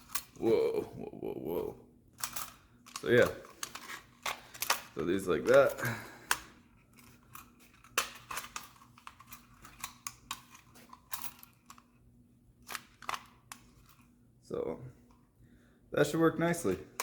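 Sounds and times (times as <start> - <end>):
faint steady hum: 0.0 - 17.0
parts clicking and knocking: 2.2 - 12.0, 12.6 - 14.0.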